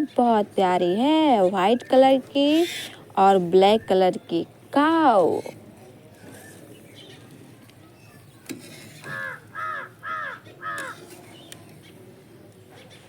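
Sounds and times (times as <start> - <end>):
crow cawing: 9.1 - 11.0.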